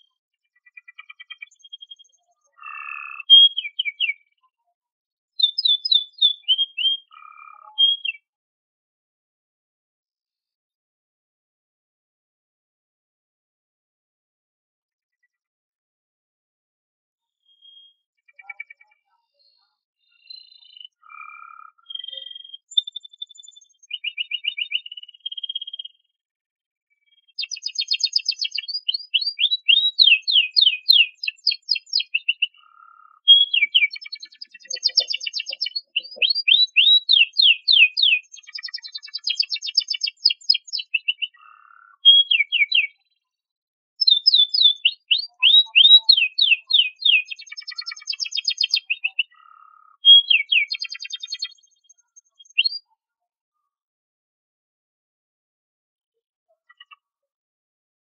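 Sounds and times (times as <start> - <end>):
canary singing trills: 0.0 - 4.4, 5.4 - 8.3, 17.4 - 26.0, 27.1 - 43.1, 44.0 - 53.0.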